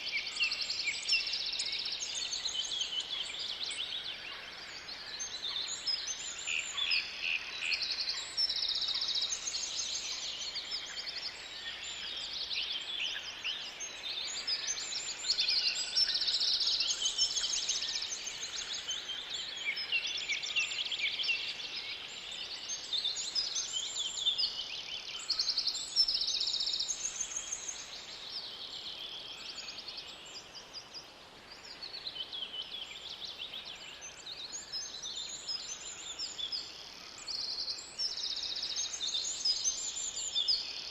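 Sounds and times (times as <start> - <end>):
birds singing in chorus: 0.0 - 40.9.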